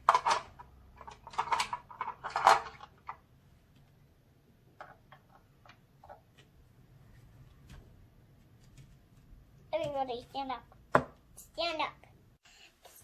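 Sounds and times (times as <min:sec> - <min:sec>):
plastic toy pieces clattering: 0:00.0 - 0:03.2.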